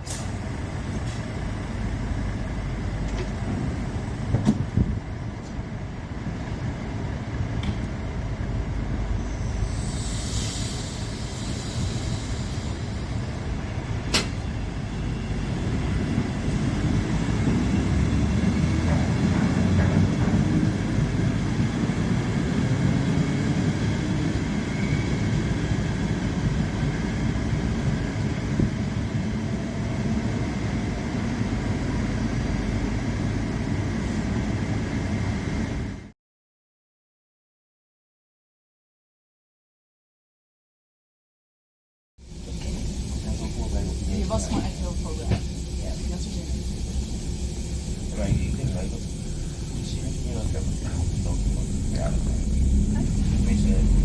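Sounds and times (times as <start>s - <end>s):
train rumbling on rails: 0.0s - 36.1s, 42.2s - 54.0s
hiss: 9.4s - 13.4s, 42.3s - 54.0s.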